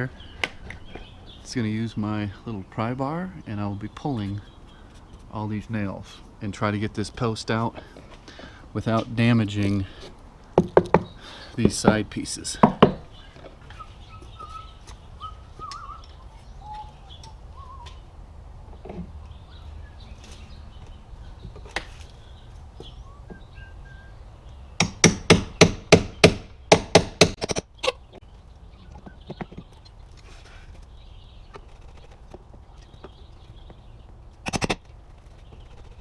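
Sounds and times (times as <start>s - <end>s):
faint bird chirps: 13.1s - 18.1s.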